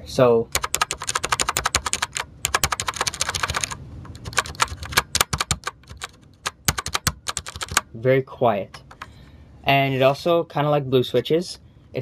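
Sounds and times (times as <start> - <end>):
quiet mechanical keyboard typing: 0.5 - 7.9.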